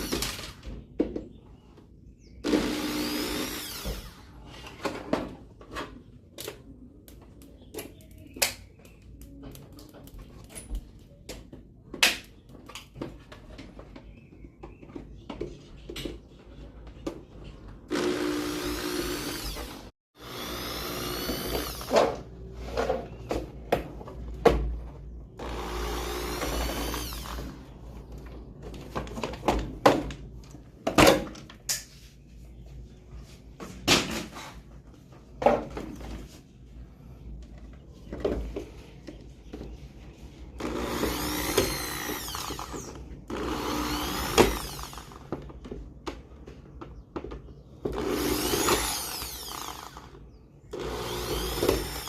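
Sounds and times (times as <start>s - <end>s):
electric drill spinning: 0.0s - 0.6s, 2.4s - 4.4s, 17.9s - 22.0s, 25.4s - 27.6s, 40.6s - 45.3s, 48.0s - 52.0s.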